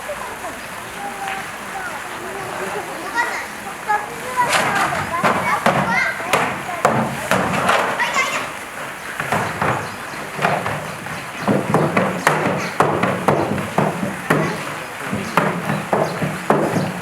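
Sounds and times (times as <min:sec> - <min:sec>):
background voices: 0:00.0 - 0:11.5.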